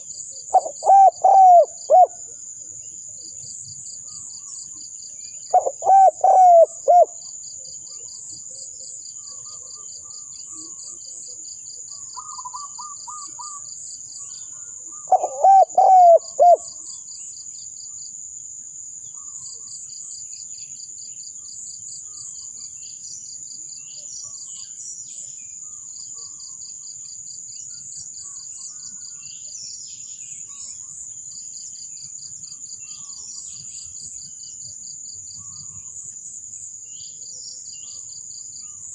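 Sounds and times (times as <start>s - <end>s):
dove cooing: 0.0s - 2.2s, 5.5s - 7.2s, 12.2s - 13.6s, 15.0s - 16.8s
insect trill: 0.0s - 38.9s.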